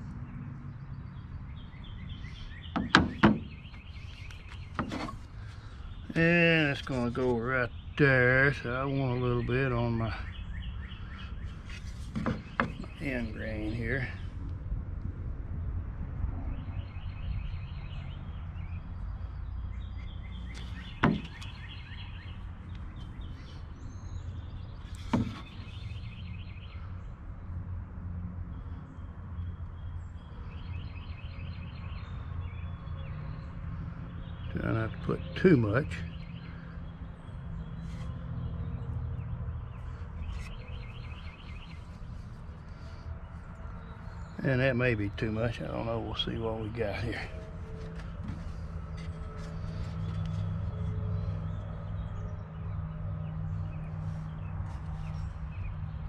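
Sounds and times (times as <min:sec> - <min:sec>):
birds chirping in trills: 0:00.0 - 0:14.5, 0:16.5 - 0:27.6, 0:28.5 - 0:56.0
sharp knocks of wooden parts: 0:02.7 - 0:05.3, 0:11.7 - 0:13.0, 0:20.5 - 0:21.6, 0:24.9 - 0:25.9.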